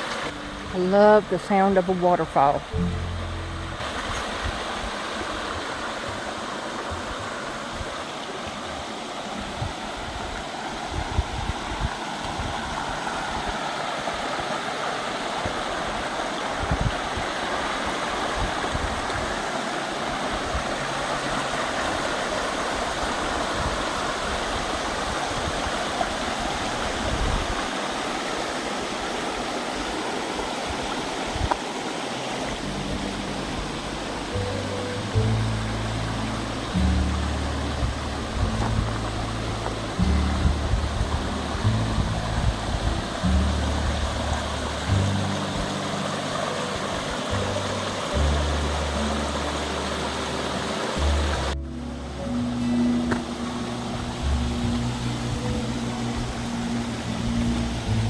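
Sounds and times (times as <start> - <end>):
waterfall rushing water: 0.0 - 58.0
brief low thumps: 2.7 - 4.4.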